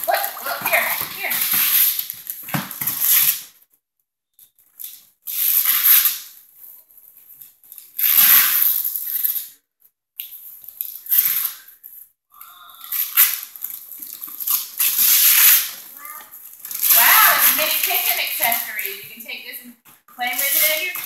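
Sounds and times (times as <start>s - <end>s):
wrapping paper tearing and crinkling: 0.0s - 3.6s, 4.7s - 9.6s, 10.5s - 11.9s, 12.9s - 19.1s, 20.2s - 21.0s
child's voice: 15.9s - 17.7s.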